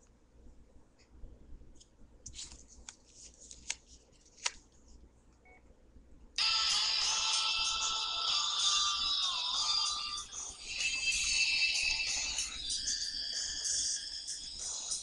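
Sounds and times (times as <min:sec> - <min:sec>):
phone ringtone: 0:06.4 - 0:15.0.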